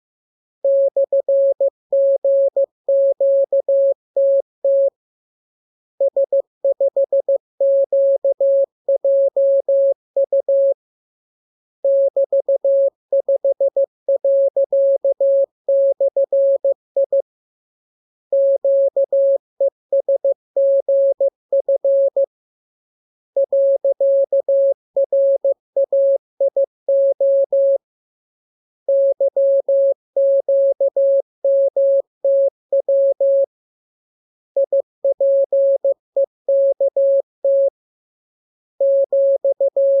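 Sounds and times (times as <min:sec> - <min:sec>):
morse code tone: 0:39.0 - 0:40.0.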